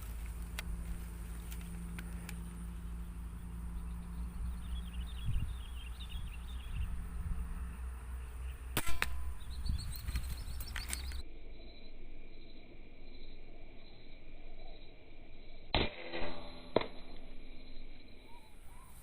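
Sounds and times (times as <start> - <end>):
wind rumble: 0.0 - 13.9
sharp shot-like snap: 8.8 - 9.4, 15.8 - 17.2.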